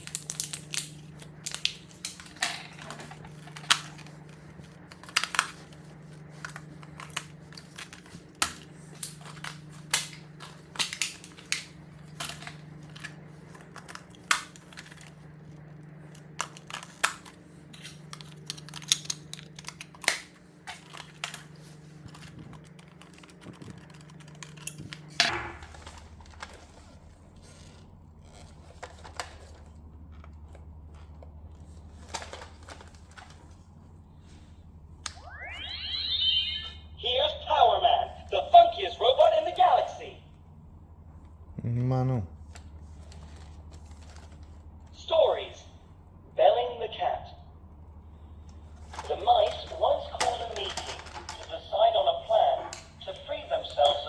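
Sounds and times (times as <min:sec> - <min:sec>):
clicks and snaps: 0:00.0 - 0:02.5, 0:16.2 - 0:21.5
packaging crinkling: 0:00.0 - 0:15.4, 0:16.0 - 0:33.6
steady low hum: 0:00.0 - 0:54.0.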